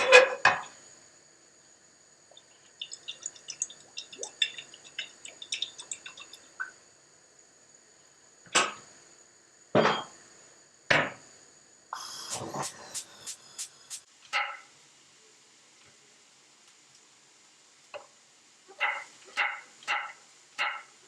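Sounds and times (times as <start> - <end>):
dishes and glassware clinking: 9.8 - 10.1.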